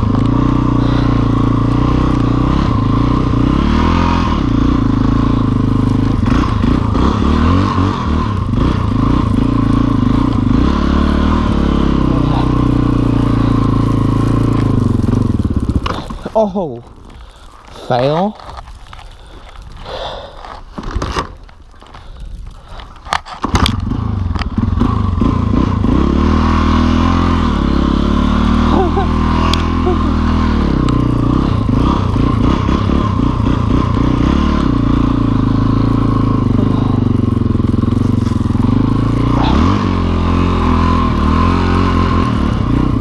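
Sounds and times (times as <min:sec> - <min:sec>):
motorcycle engine revving: 0:00.0 - 0:21.3, 0:23.2 - 0:43.0
clicks and crunches: 0:12.2 - 0:24.6, 0:28.8 - 0:31.8.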